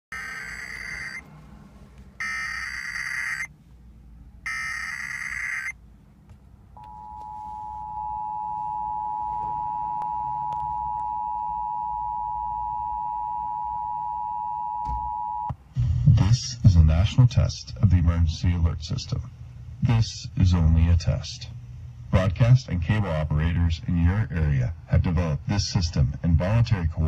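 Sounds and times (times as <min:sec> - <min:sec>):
screeching digital data tones: 0:00.1 - 0:01.2, 0:02.2 - 0:03.5, 0:04.5 - 0:05.8
two-tone attention signal: 0:00.1 - 0:01.2, 0:02.2 - 0:03.5, 0:04.5 - 0:05.7.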